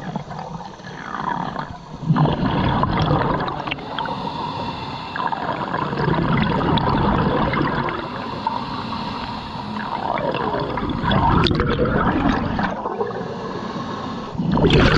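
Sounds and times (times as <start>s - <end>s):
water gurgling and sloshing: 0.0s - 14.9s.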